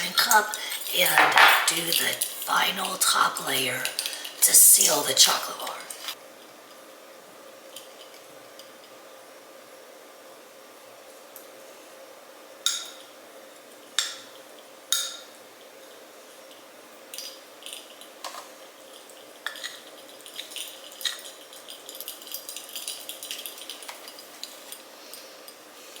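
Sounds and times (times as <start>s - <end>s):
utensil clinking on cup: 0.0s - 4.6s.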